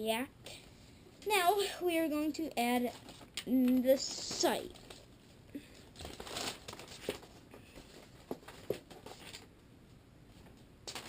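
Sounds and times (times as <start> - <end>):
packaging crinkling and rustling: 2.8 - 9.5.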